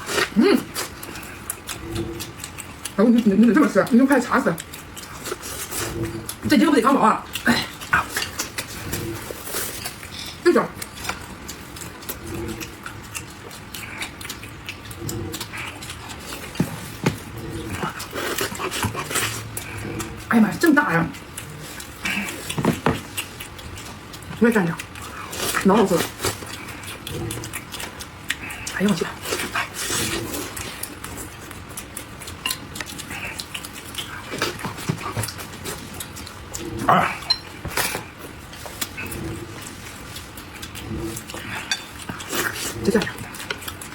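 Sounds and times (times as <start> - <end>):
person chewing loudly: 0.0 - 43.9
chopsticks tapping dishes: 37.2 - 37.8, 41.6 - 42.0.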